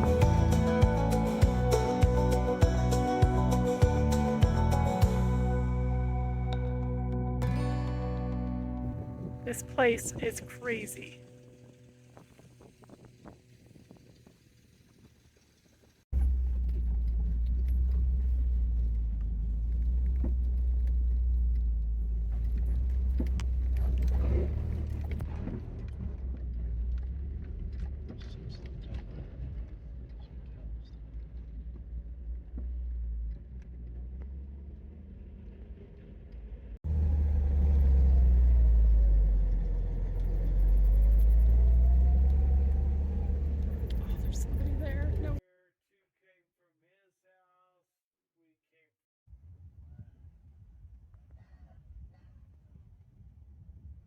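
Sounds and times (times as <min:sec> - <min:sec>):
vehicle engine and road rumble: 0:00.0 - 0:45.4
faint engine whine: 0:31.6 - 0:45.4.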